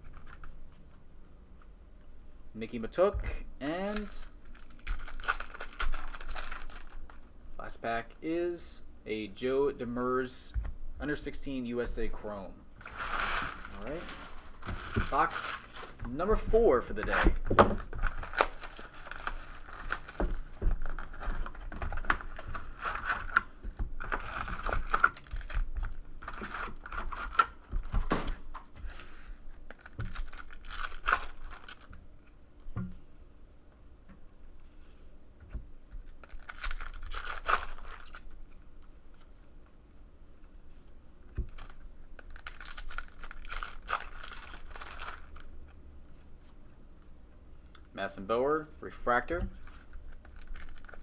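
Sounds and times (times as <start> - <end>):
packaging ripping and rustling: 3.8 - 7.2, 12.8 - 16.1, 16.8 - 32.0, 36.0 - 38.4, 41.3 - 45.5, 49.6 - 51.0.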